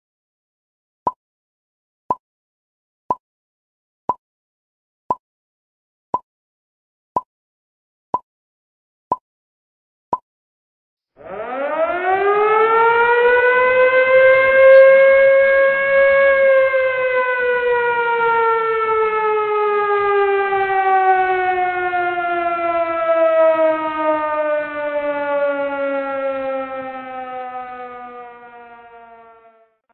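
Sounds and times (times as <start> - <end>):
warning siren wailing: 11.2 - 29.9.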